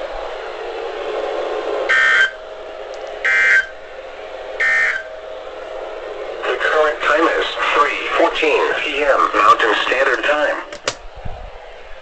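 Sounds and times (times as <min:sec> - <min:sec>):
faint radio hiss: 0:06.4 - 0:10.8.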